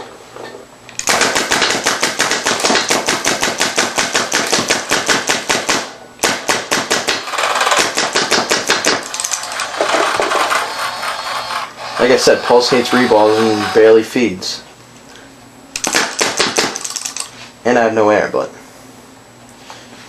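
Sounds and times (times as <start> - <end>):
paintball marker firing rapidly: 1.0 - 10.5, 15.8 - 17.0.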